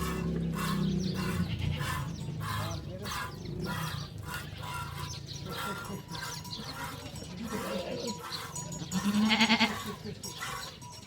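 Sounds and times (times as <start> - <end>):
goat bleating: 0.0 - 4.9, 6.7 - 10.0
faint animal sounds: 0.0 - 11.0.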